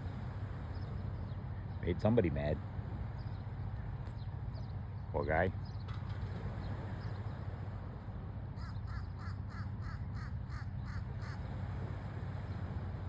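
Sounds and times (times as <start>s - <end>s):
crows cawing: 8.6s - 11.4s.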